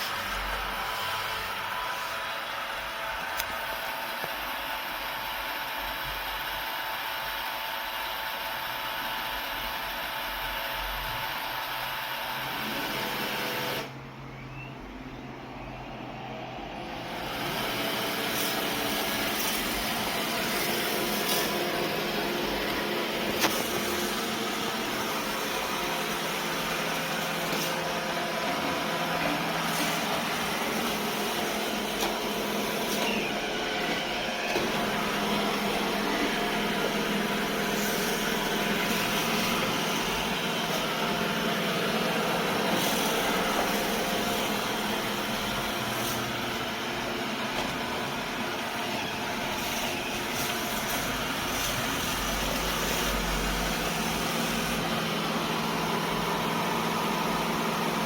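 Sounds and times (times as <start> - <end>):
robot vacuum motor running: 16.9 - 58.0.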